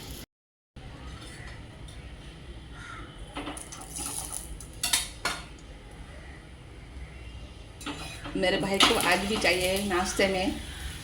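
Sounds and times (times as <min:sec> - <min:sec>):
utensils clinking on dishes: 0:03.4 - 0:05.5, 0:07.8 - 0:09.9.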